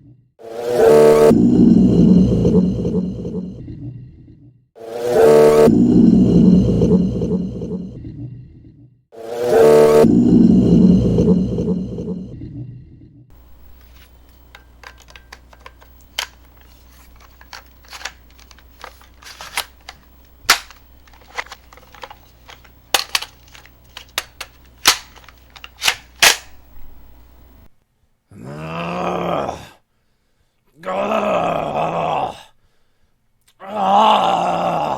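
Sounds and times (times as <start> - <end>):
low steady hum: 10.0 - 27.7
sharp pops and cracks: 17.2 - 26.6
person groaning: 30.8 - 32.5, 33.6 - 34.9.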